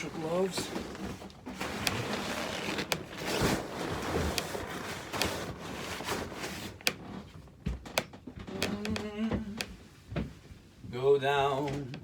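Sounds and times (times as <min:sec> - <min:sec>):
rustling handling noise: 0:00.0 - 0:08.0.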